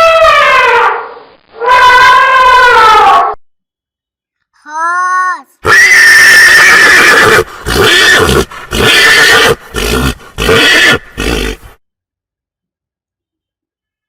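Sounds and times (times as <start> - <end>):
horse neighing: 5.7 - 11.8.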